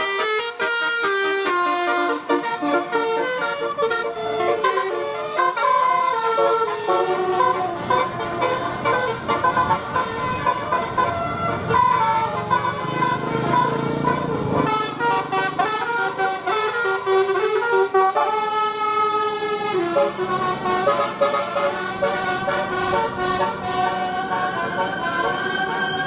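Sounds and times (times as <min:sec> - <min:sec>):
musical bus air horns: 0:00.0 - 0:26.0.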